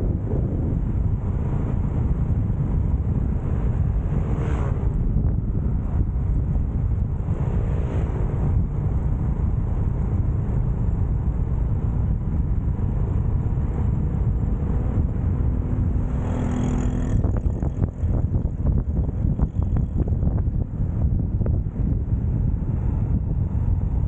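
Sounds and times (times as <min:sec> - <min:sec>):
wind buffeting microphone: 0:00.0 - 0:24.0
motorcycle engine: 0:13.5 - 0:20.6.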